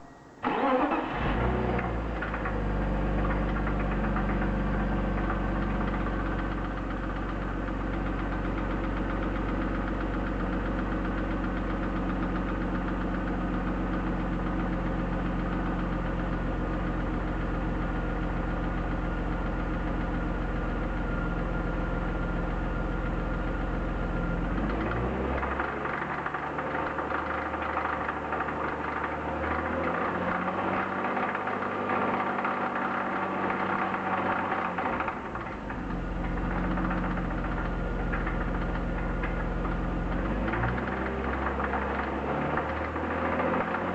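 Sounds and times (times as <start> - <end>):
engine idling with a knock: 33.5 - 43.9.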